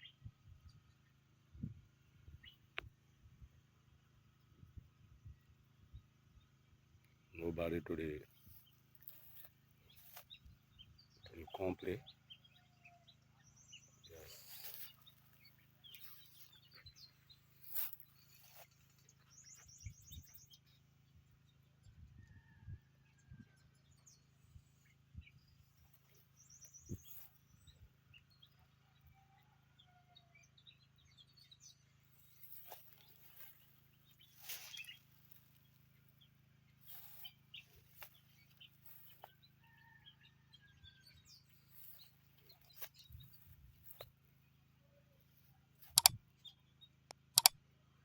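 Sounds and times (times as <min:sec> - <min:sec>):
faint bird chirps: 0:08.3 - 0:20.8, 0:22.2 - 0:30.3
clicking noises: 0:45.9 - 0:46.2, 0:47.1 - 0:47.6.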